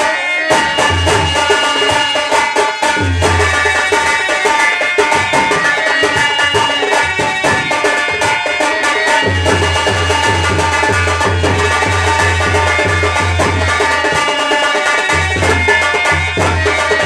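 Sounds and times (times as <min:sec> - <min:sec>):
steady drum beat: 0:00.0 - 0:17.0
sustained pitched instruments: 0:00.0 - 0:17.0.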